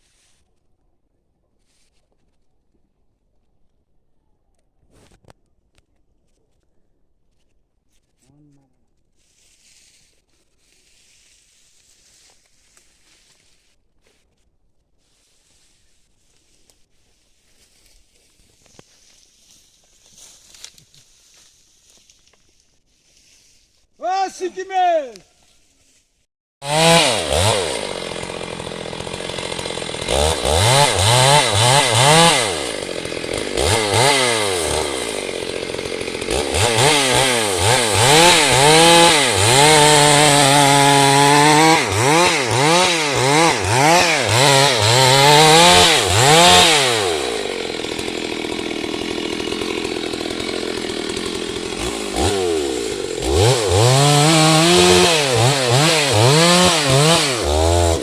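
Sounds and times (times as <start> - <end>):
chainsaw revving: 26.6 - 58.0.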